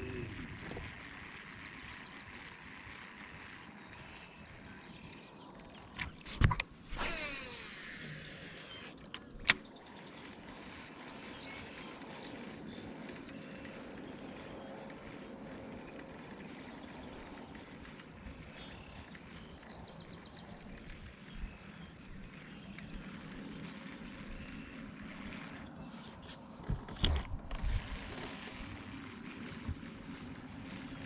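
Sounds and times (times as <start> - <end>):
fishing reel spool whirring: 0.0 - 31.0
steady low hum: 0.0 - 31.0
sharp click: 5.8 - 9.8.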